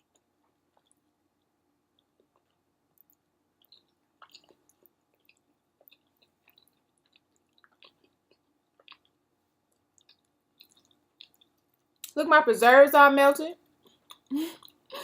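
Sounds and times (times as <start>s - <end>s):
chewing with wet mouth clicks: 0.0s - 12.2s, 13.8s - 14.9s.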